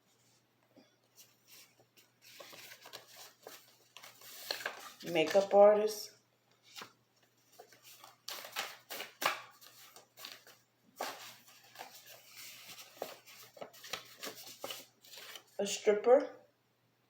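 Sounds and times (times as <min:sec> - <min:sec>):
cards rustling and sliding: 0:01.1 - 0:05.6, 0:06.6 - 0:15.6.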